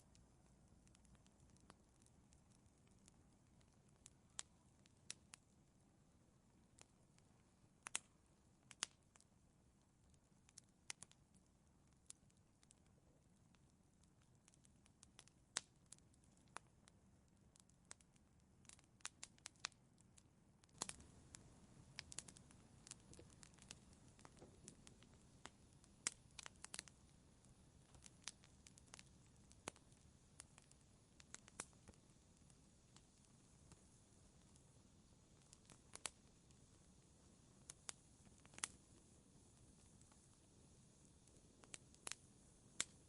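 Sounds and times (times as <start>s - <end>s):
faint low hiss: 0.0s - 43.0s
wood fire crackling: 0.0s - 43.0s.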